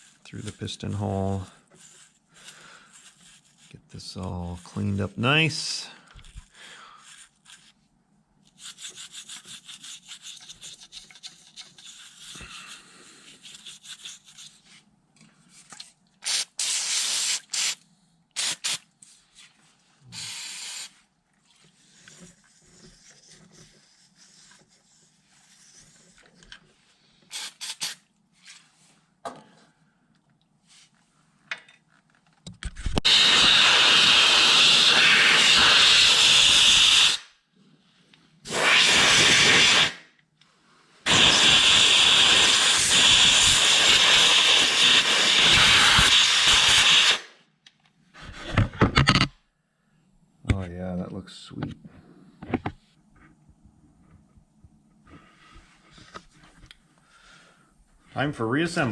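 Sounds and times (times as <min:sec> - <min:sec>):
toothbrush scrubbing metal: 0:08.5 - 0:14.6
aerosol spray hiss: 0:16.3 - 0:17.8, 0:18.4 - 0:18.8, 0:20.1 - 0:21.0, 0:33.0 - 0:37.2, 0:38.5 - 0:40.0, 0:41.1 - 0:47.3.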